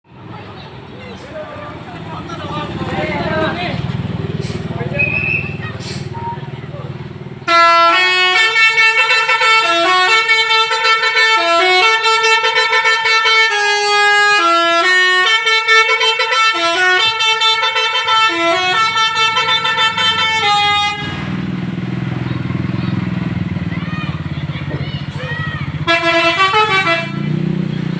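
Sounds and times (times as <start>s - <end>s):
multi-tone bus horn melody: 7.4s - 21.5s, 25.1s - 27.4s.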